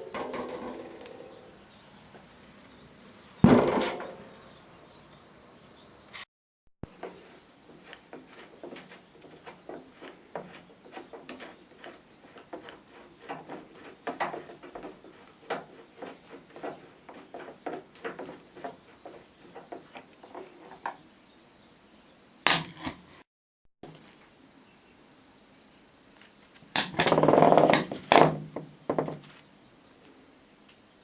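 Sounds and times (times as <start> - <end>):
hard objects clicking and knocking: 0.0 - 1.4, 6.9 - 21.0, 26.6 - 29.2.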